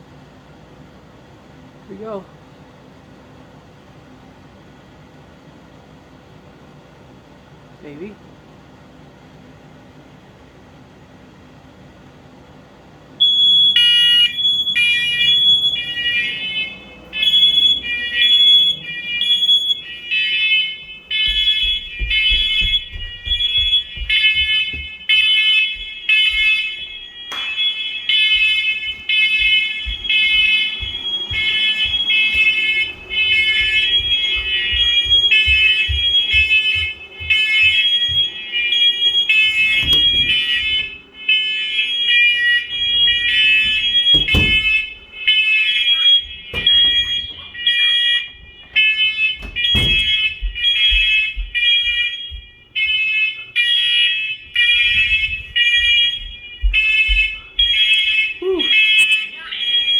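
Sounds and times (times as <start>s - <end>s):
smoke alarms beeping: 13.2s - 59.9s.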